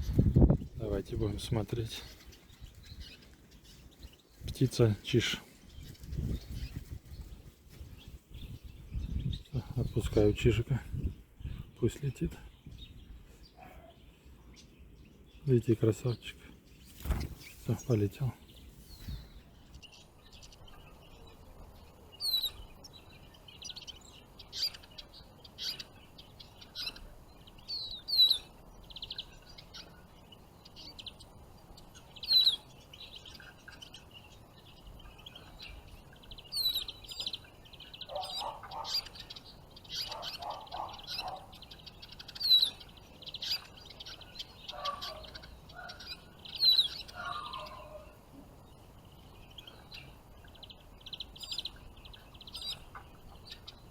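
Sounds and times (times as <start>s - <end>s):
songbirds chirping: 0.0s - 53.9s
lower chattering bird call: 32.0s - 48.2s.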